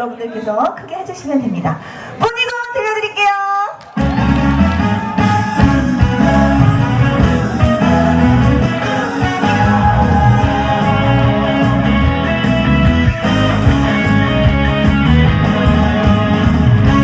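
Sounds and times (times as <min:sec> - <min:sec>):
band music with electric guitar: 0:03.9 - 0:17.0.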